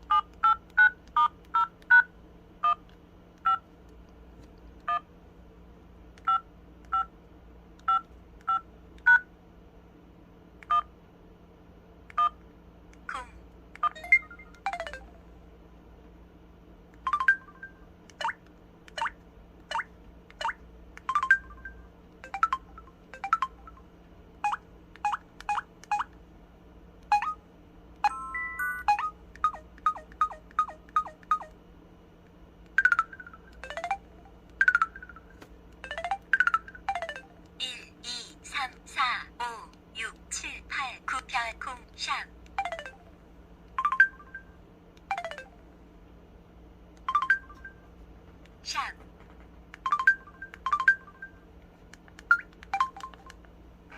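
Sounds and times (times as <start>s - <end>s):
phone multi-tone chime: 28.1s - 31.5s
phone electronic beeps: 28.1s - 31.6s.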